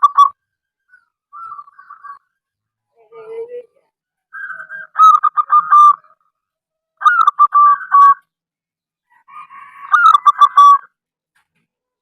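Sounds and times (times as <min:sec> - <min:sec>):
dove cooing: 0:01.3 - 0:02.3, 0:04.4 - 0:06.3, 0:09.8 - 0:10.9.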